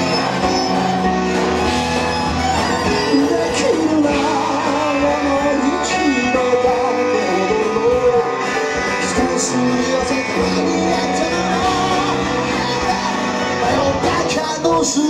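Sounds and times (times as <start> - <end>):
guitar: 0.0 - 15.0
live band music: 0.0 - 15.0
person singing: 0.0 - 15.0.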